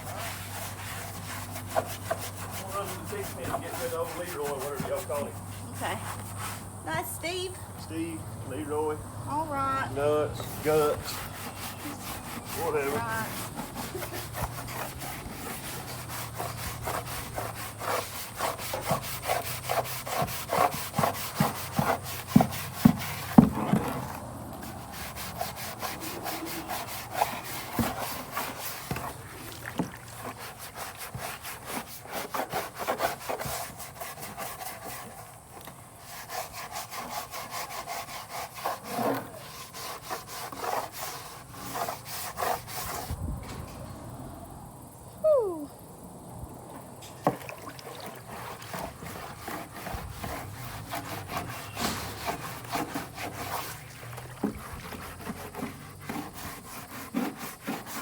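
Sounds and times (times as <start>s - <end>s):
rhythmic scraping strokes: 0.0s - 7.5s, 8.6s - 23.8s, 48.3s - 58.0s.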